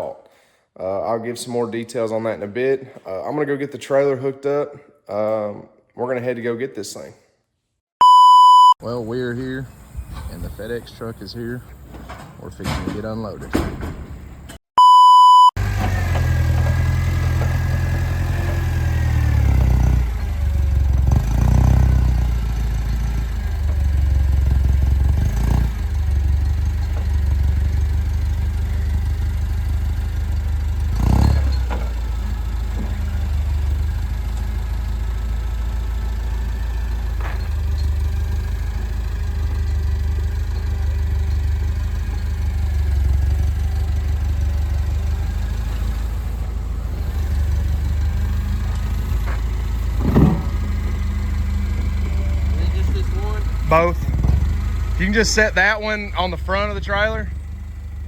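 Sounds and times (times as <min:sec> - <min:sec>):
sharp clunks: 0:11.8 - 0:14.6, 0:48.8 - 0:51.1
engine running at low speed: 0:15.6 - 0:58.0.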